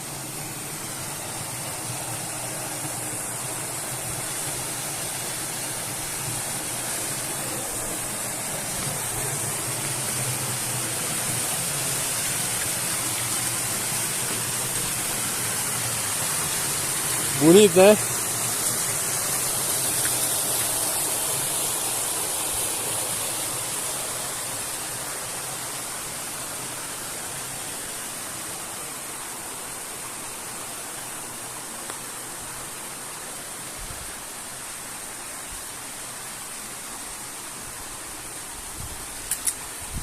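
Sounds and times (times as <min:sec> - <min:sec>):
waterfall stream rushing: 0:00.0 - 0:40.0.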